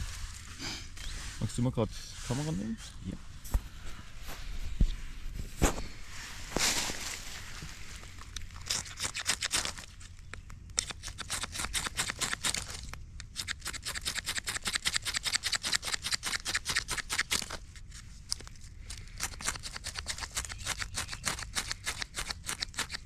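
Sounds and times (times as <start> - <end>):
knife scraping a ferro rod: 10.8 - 17.6, 19.2 - 23.0.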